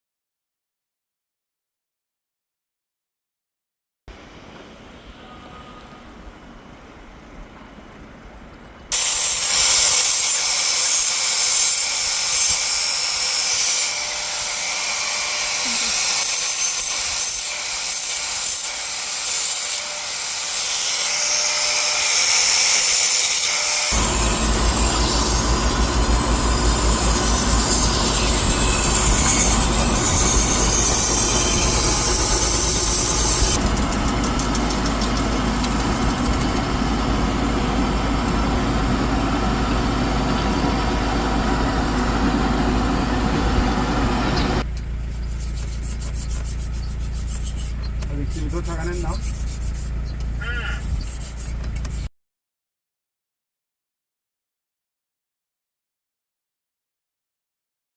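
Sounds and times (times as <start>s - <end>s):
knife grinding hiss: 22.1s - 33.6s
motor hum: 23.7s - 52.0s.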